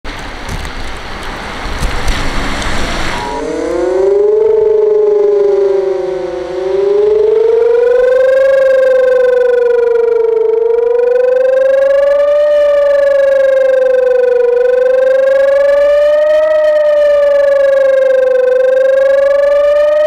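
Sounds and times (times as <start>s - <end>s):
broad rushing noise: 0.1s - 9.6s
wailing siren: 3.1s - 20.0s.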